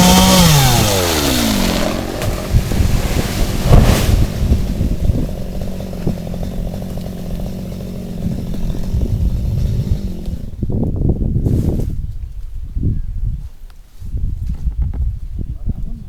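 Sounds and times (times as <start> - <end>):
chainsaw engine idling: 0.0 - 10.6
chainsaw burst: 0.0 - 10.7.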